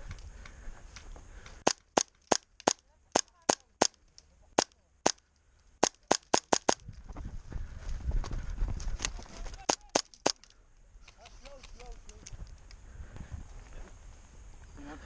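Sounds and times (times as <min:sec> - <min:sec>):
airsoft gun shots: 0:05.8 - 0:06.8.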